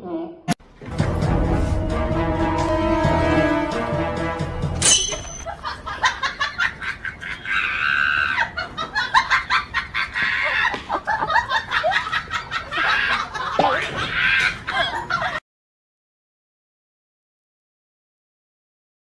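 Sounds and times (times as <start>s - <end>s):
loud animal calls: 7.2s - 8.6s.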